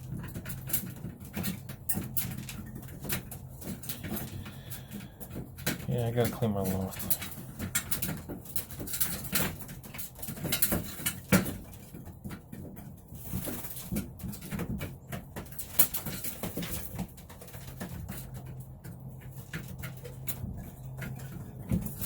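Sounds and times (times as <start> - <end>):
pigeons cooing: 1.5 - 8.5.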